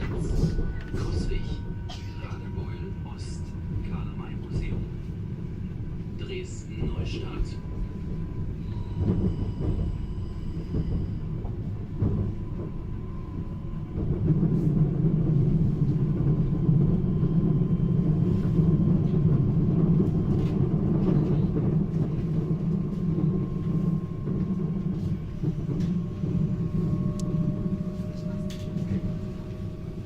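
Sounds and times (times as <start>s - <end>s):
train wheels rumbling: 0.0s - 30.0s.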